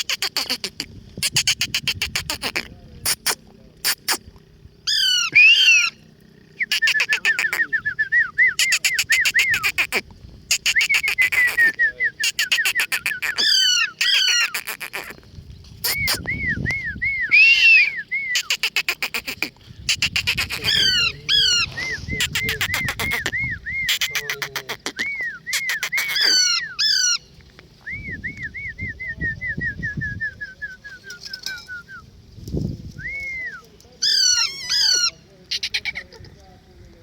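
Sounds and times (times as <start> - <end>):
parrot chirps: 0.0 - 4.2, 6.6 - 7.7, 8.6 - 15.2, 17.4 - 27.3, 34.0 - 36.0
parrot squawks: 0.0 - 4.2, 4.9 - 6.0, 6.6 - 7.6, 8.6 - 15.2, 17.4 - 27.3, 34.0 - 36.0.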